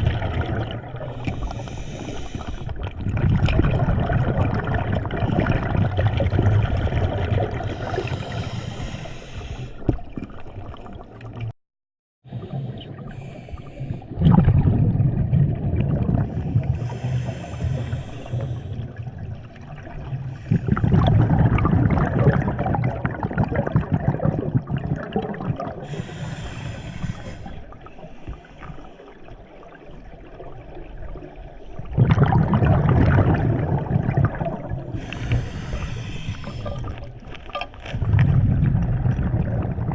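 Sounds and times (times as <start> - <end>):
exhaust bubbles rumbling: 0.0 - 8.5, 14.0 - 25.9, 30.1 - 39.9
regulator inhale hiss: 1.2 - 2.7, 7.7 - 9.8, 13.1 - 14.1, 16.6 - 18.8, 25.8 - 29.3, 35.0 - 37.1.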